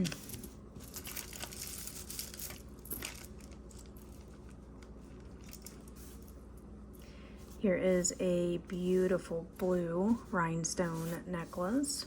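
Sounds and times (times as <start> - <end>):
plastic packaging crinkling: 0.0 - 6.3.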